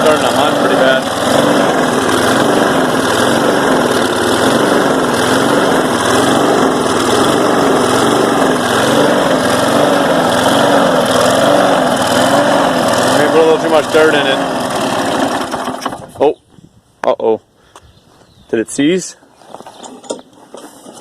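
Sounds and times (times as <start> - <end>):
lawn mower engine surging: 0.0 - 16.4.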